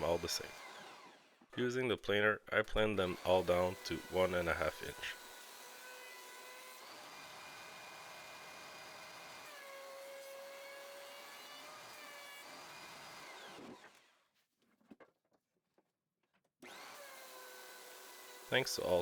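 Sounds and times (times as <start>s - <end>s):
thickness planer whining: 0.0s - 1.3s, 3.0s - 14.1s, 16.6s - 19.0s.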